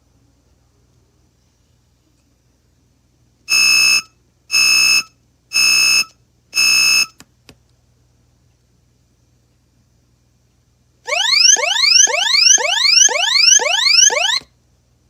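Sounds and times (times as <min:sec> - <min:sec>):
alarm beeps from speaker: 0:11.1 - 0:14.4.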